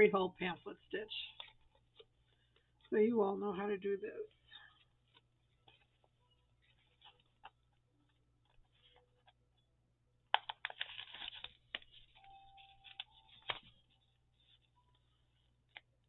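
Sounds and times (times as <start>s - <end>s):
paper rustling: 4.3s - 9.4s, 10.3s - 16.0s
brief steady tone: 12.2s - 13.2s.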